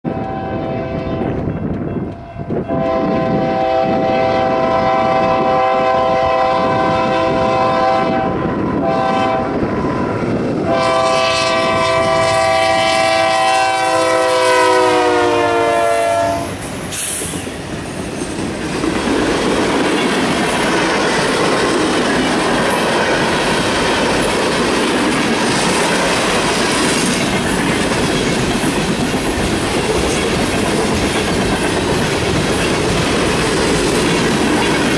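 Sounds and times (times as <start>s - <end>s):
locomotive air horn blasts: 0.0s - 1.4s, 2.4s - 9.8s, 10.6s - 16.6s
train wheels clattering: 16.5s - 34.9s.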